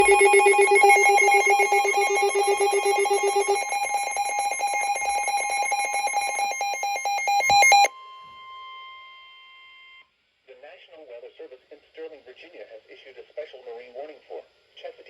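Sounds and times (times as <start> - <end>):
pulsing electronic alarm ringing: 0.0 - 7.9.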